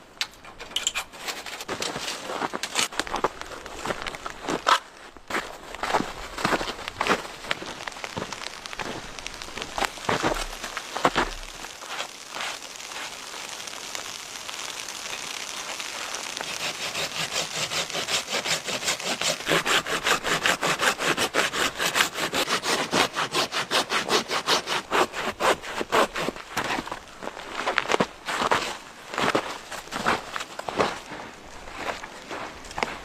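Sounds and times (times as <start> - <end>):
hand saw cutting wood: 16.4 - 26.7.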